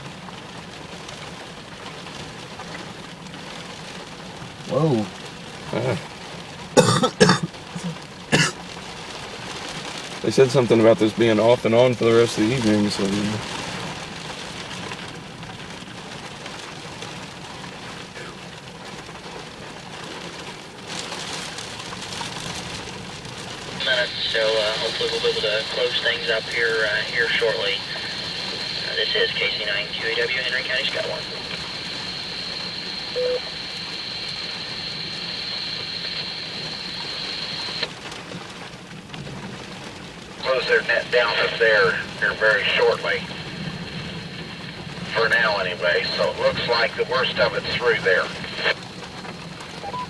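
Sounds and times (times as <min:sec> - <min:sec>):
rain pattering on a vehicle: 0:00.0 - 0:50.0
radio hiss: 0:04.7 - 0:06.1, 0:06.8 - 0:08.5, 0:10.2 - 0:13.8, 0:18.1 - 0:18.5, 0:23.7 - 0:38.0, 0:40.4 - 0:49.0
short radio beep: 0:23.8 - 0:37.9
thin high whine: 0:23.8 - 0:37.9.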